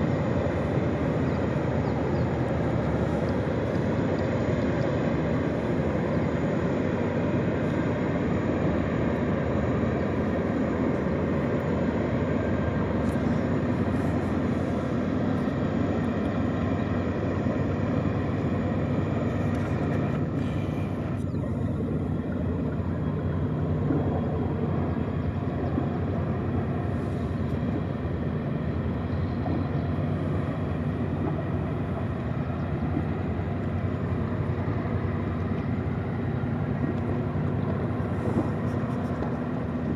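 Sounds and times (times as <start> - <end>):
boat diesel engines droning: 0.0 - 39.9.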